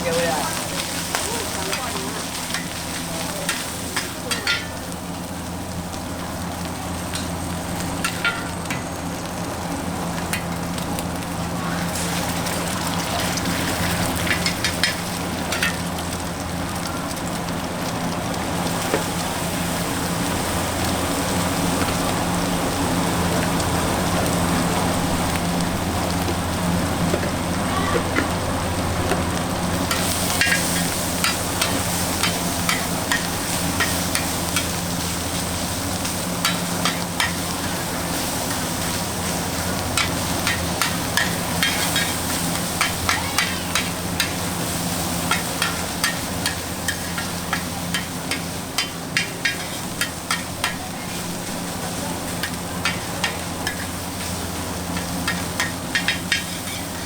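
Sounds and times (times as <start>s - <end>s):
rice sizzling in a wok: 0.0s - 57.0s
metal utensil striking wok: 1.6s - 4.9s, 8.0s - 8.9s, 13.2s - 15.9s, 29.8s - 35.0s, 36.0s - 38.9s, 39.8s - 44.5s, 45.2s - 51.0s, 52.3s - 57.0s.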